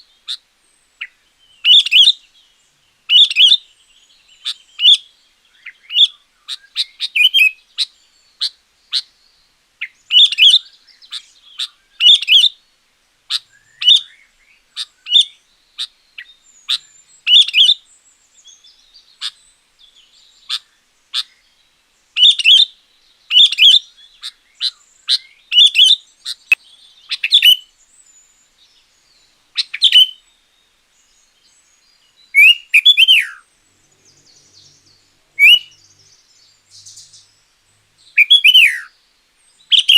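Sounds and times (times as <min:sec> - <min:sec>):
bulbul singing: 0:28.7 - 0:39.9.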